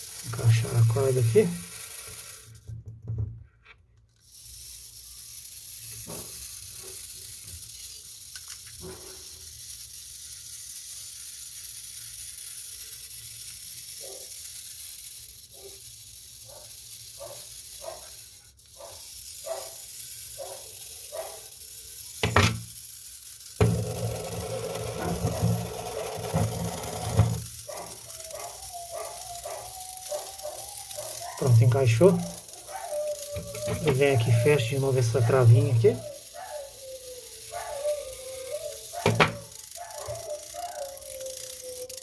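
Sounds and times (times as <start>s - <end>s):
steady hiss: 0.0s - 2.6s, 4.3s - 16.2s.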